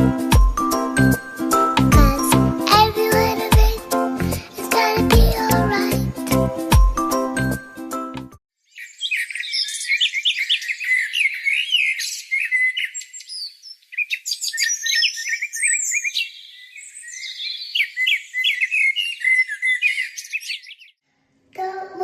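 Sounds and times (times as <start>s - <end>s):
backing music: 0.0s - 8.4s
songbirds chirping: 8.6s - 21.0s.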